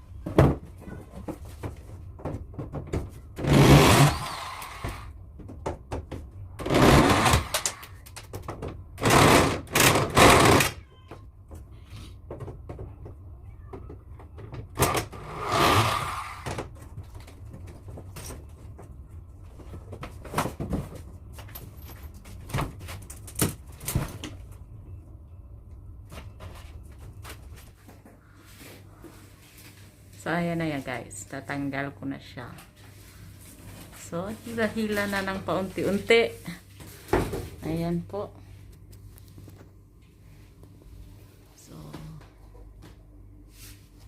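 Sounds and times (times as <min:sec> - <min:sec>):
loud scraping or tearing: 0:03.5 - 0:05.0, 0:15.2 - 0:16.4.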